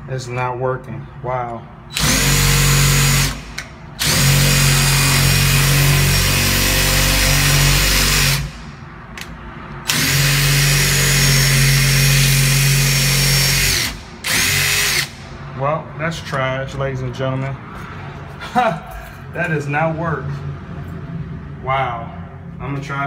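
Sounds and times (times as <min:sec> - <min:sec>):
drill running: 0:01.9 - 0:08.7, 0:09.9 - 0:15.2.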